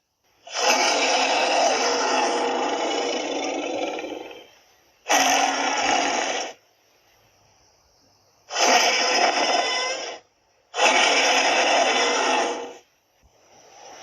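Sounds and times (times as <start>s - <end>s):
dinosaur roars: 0.5s - 4.5s, 5.1s - 6.6s, 8.5s - 10.2s, 10.8s - 12.8s.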